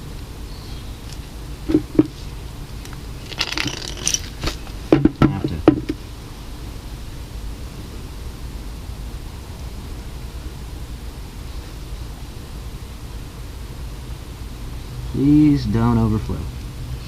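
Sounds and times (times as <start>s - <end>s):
small metal parts clinking: 2.8s - 4.8s.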